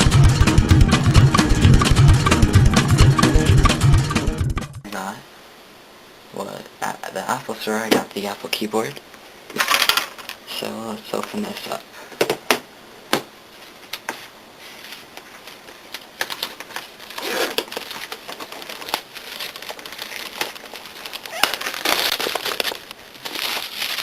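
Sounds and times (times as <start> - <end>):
plastic wrapping crinkling: 14.7 - 24.0.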